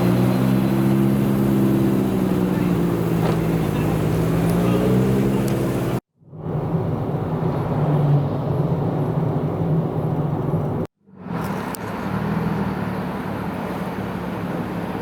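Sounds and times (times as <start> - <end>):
car engine running: 0.0 - 6.0
road and traffic noise: 0.0 - 15.0.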